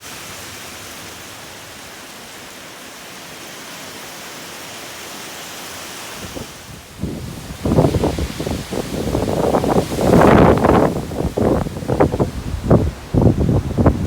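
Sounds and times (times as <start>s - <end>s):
rain hissing: 0.0s - 14.0s
wind: 0.0s - 14.0s
wind buffeting microphone: 6.2s - 14.0s.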